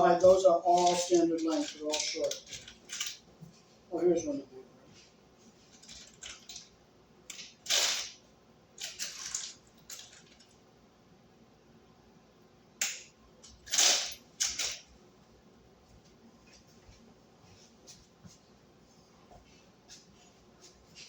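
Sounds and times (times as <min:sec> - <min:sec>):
screws rattling in a box: 0:00.6 - 0:03.2, 0:05.7 - 0:06.6, 0:08.8 - 0:10.5.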